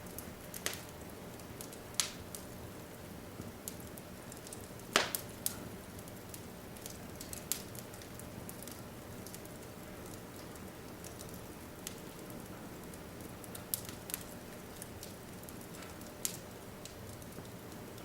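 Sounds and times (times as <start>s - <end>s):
fire pops and snaps: 0.0s - 2.5s, 3.4s - 18.0s
wood fire crackling: 0.0s - 18.0s.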